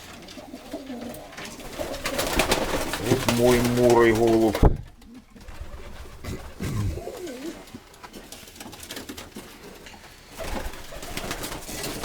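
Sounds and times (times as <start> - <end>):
pigeons cooing: 0.0 - 12.0.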